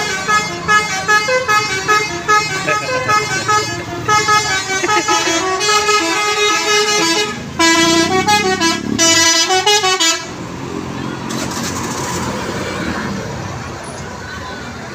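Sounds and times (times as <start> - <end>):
multi-tone musical bus horn: 0.0 - 10.5.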